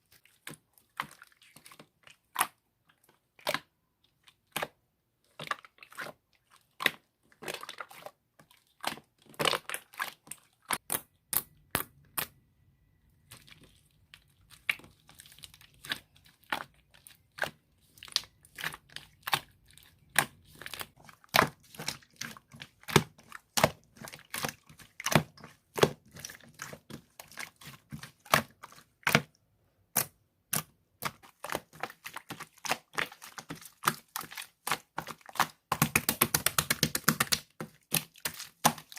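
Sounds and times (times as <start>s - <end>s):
slime clicking and popping: 33.0s - 38.9s.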